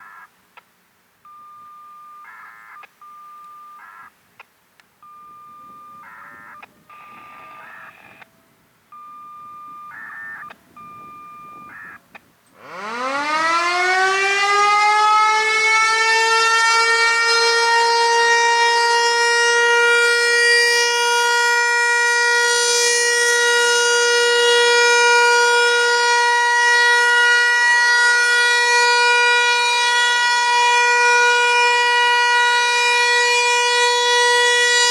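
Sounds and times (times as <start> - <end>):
short electronic beeps: 1.3 - 4.1, 5.0 - 8.3, 8.9 - 12.1
warning siren winding up: 5.6 - 8.3, 9.1 - 34.9.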